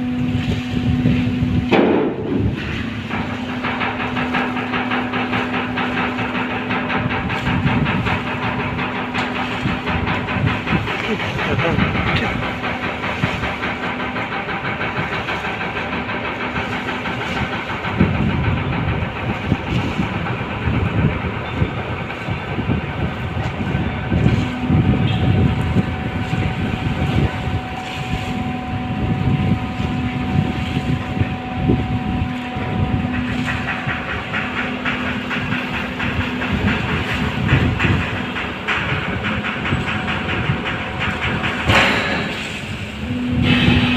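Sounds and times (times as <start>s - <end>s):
ferry diesel machinery rumble: 0.0s - 43.9s
humming tones: 0.0s - 43.9s.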